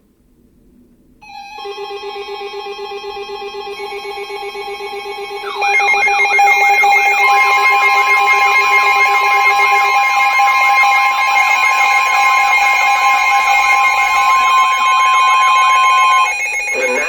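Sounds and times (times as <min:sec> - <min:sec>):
steady high electronic tone: 0:01.6 - 0:17.0
pulsing lower tone: 0:03.5 - 0:17.0
warbling siren-like sweep: 0:04.6 - 0:17.0.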